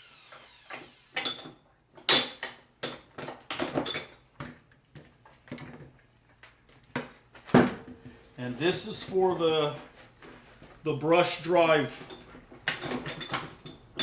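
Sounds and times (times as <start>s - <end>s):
metallic clinks and knocks: 1.2s - 4.6s, 11.8s - 14.0s.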